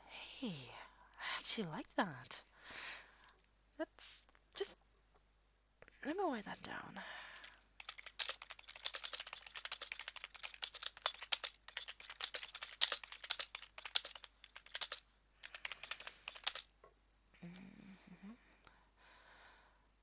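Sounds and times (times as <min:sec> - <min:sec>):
typing on computer keyboard: 0:07.8 - 0:16.7.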